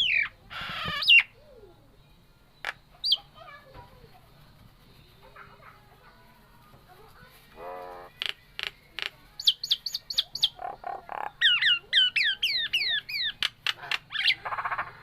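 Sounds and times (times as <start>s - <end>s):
myna bird calling: 0.0s - 1.7s, 7.5s - 15.0s.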